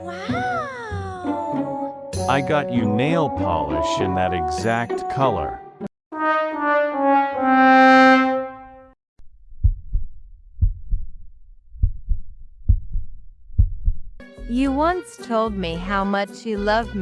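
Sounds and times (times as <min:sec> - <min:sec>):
low dull thuds: 0:11.8 - 0:14.1.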